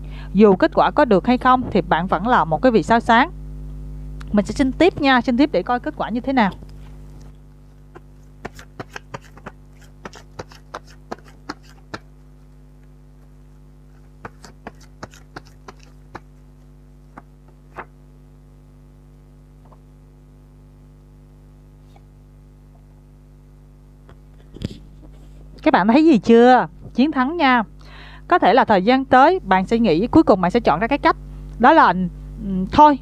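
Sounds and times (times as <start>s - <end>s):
low electrical hum: 0.0s - 33.0s
cards tapping and clicking: 7.9s - 12.1s, 14.2s - 16.3s, 17.1s - 17.9s.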